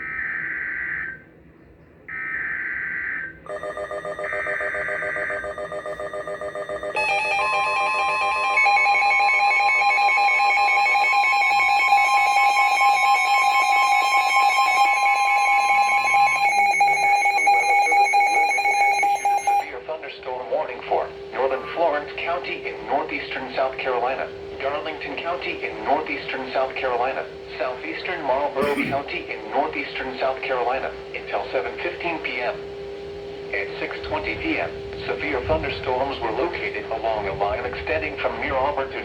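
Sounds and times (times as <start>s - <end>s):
steady warning alarm tone: 0.0s - 1.3s, 2.1s - 39.0s
alert receiver alarm beeping: 3.5s - 19.7s.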